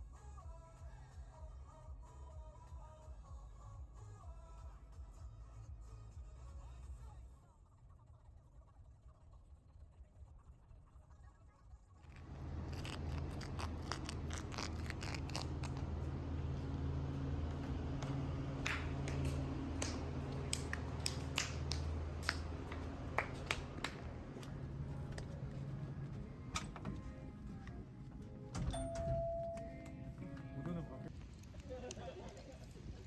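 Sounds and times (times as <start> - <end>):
low steady hum: 11.9 - 33.0.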